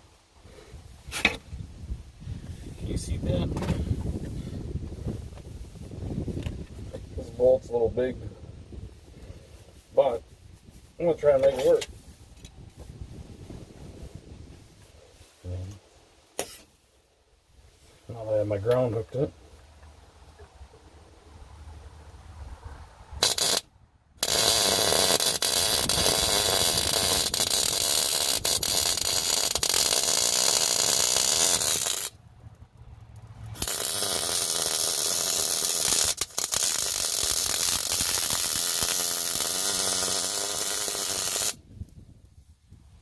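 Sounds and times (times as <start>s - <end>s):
arc welder crackling and sizzling: 23.2s - 42.0s.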